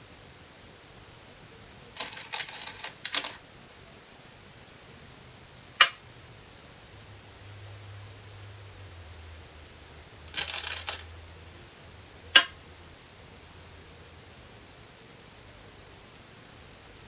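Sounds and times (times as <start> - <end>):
glass stones clicking together: 2.0 - 3.4, 10.3 - 11.1.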